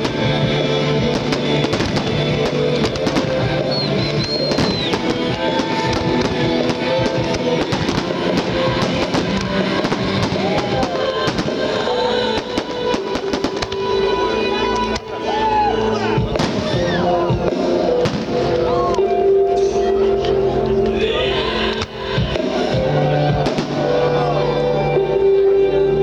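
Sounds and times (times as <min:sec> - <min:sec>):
loud music with drum beat: 0:00.0 - 0:14.0, 0:15.9 - 0:19.7, 0:21.7 - 0:24.3
fireworks bangs and crackles: 0:00.0 - 0:14.3, 0:16.2 - 0:19.0, 0:22.2 - 0:24.2.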